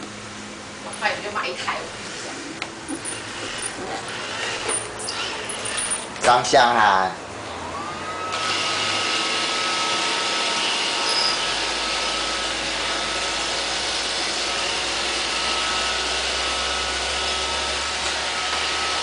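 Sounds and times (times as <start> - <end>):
robot vacuum cleaner whirring: 7.7 - 19.0.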